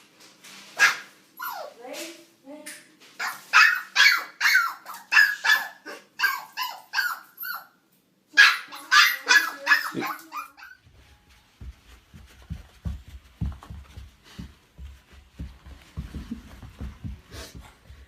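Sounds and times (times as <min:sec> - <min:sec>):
small dog barking: 0:00.8 - 0:01.7, 0:03.2 - 0:07.6, 0:08.4 - 0:10.8.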